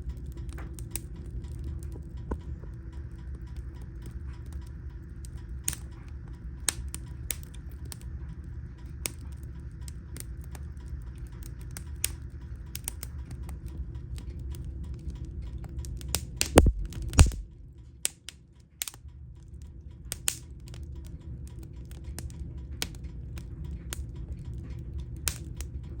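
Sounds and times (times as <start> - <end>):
low rumble of fire: 0.0 - 26.0
wood fire crackling: 0.0 - 26.0
loud thuds: 16.6 - 17.4.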